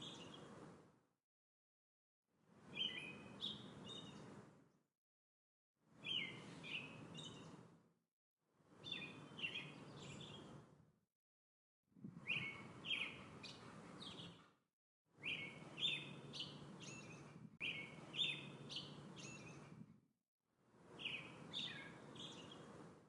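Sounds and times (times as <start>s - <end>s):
songbird chirping: 0.0s - 0.6s, 2.6s - 4.5s, 6.0s - 7.6s, 8.7s - 10.7s, 12.2s - 14.5s, 15.2s - 19.8s, 20.9s - 22.9s.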